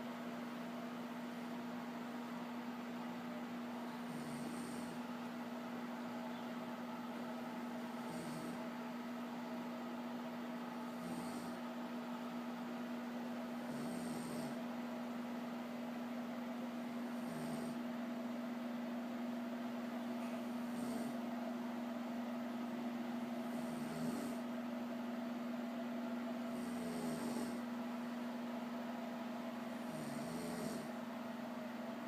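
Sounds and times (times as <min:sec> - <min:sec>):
steady hum: 0:00.0 - 0:32.0
person snoring: 0:04.0 - 0:05.1, 0:07.9 - 0:08.7, 0:10.9 - 0:11.6, 0:13.6 - 0:14.6, 0:17.1 - 0:17.9, 0:20.6 - 0:21.2, 0:23.4 - 0:24.5, 0:26.5 - 0:27.7, 0:29.8 - 0:31.0.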